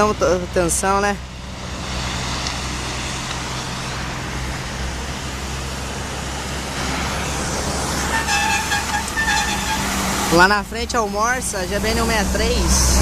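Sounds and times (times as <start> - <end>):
road noise: 0.0 - 13.0
truck engine rumbling: 0.0 - 13.0
vehicle horn: 8.0 - 10.1.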